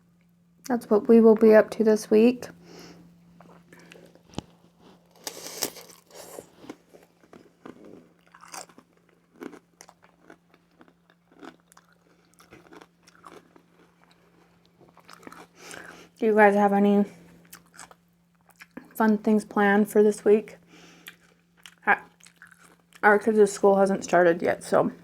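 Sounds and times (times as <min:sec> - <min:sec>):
person chewing and crunching: 0:03.4 - 0:16.2, 0:17.4 - 0:18.9, 0:21.0 - 0:23.0.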